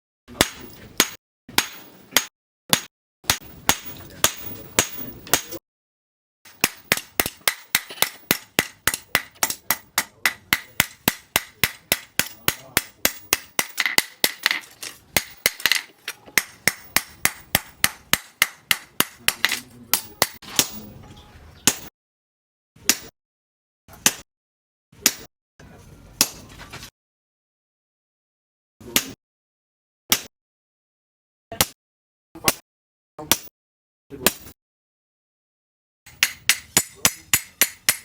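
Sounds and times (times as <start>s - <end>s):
hammer striking steel on anvil: 0.3s - 5.6s, 6.5s - 21.0s, 36.1s - 38.0s.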